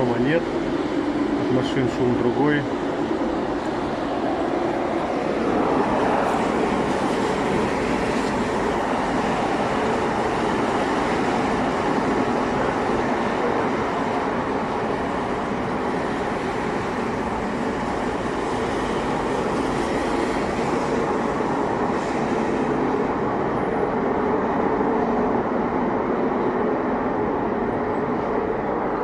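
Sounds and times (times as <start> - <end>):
droning rushing rumble: 0.0 - 23.7.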